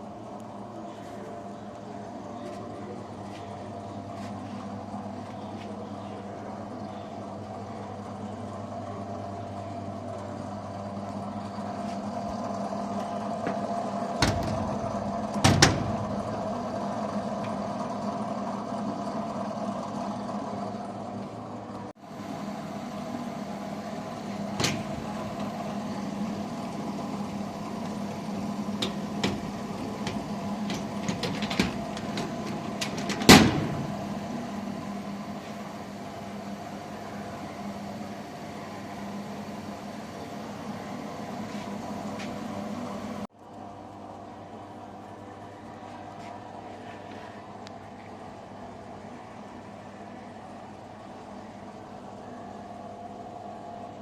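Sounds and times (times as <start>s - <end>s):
welding arc buzzing hum: 22.1s - 44.0s.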